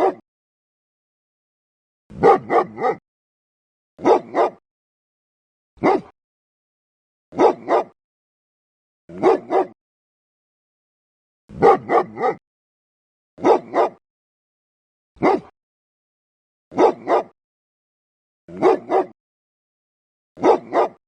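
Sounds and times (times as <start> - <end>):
dog barking: 0.0 - 0.2, 2.1 - 3.0, 4.0 - 4.6, 5.8 - 6.2, 7.3 - 8.0, 9.1 - 9.8, 11.5 - 12.4, 13.4 - 14.0, 15.2 - 15.6, 16.7 - 17.4, 18.5 - 19.2, 20.4 - 21.0.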